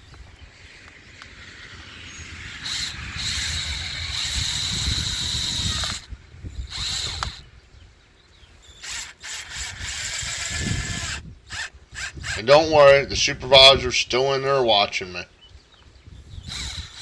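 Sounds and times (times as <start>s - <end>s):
cordless drill driving screws: 0.8s - 7.6s, 8.5s - 12.5s, 16.4s - 17.0s.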